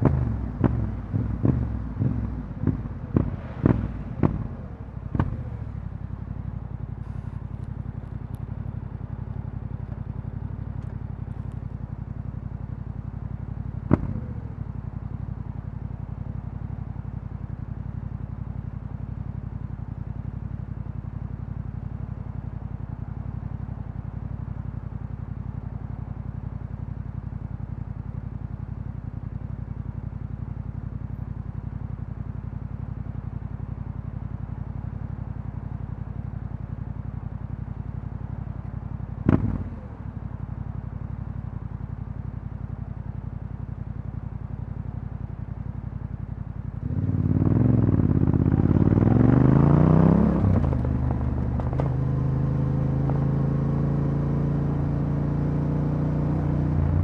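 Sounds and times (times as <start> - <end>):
motorcycle revving and pulling away: 0.0 - 7.2, 32.0 - 42.1, 45.8 - 57.0
motorcycle engine idling: 0.0 - 53.3.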